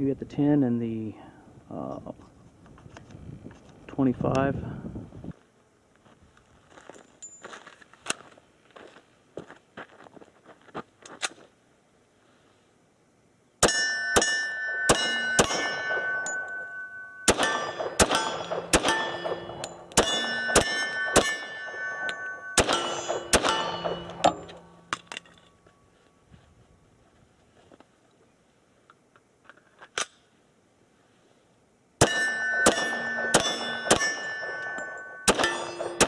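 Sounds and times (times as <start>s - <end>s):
pistol shots: 13.6s - 16.5s, 17.2s - 25.0s, 32.0s - 36.0s
metallic ringing clangs: 13.6s - 25.7s, 32.0s - 36.0s.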